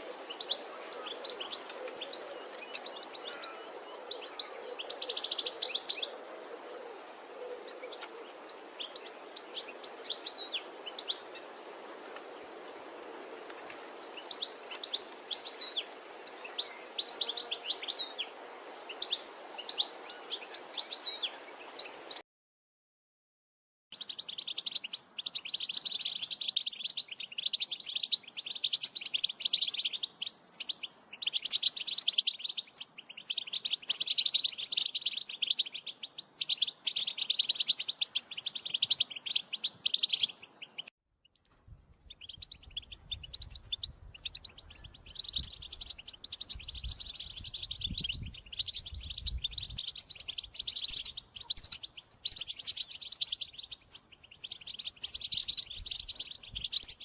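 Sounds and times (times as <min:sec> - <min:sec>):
goldfinch twittering: 0:42.1 - 0:57.0.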